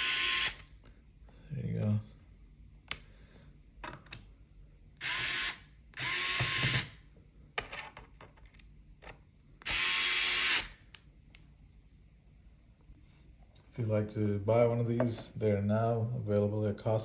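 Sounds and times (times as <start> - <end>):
electric screwdriver motor whine: 0.0 - 0.7, 5.0 - 6.9, 9.6 - 10.8.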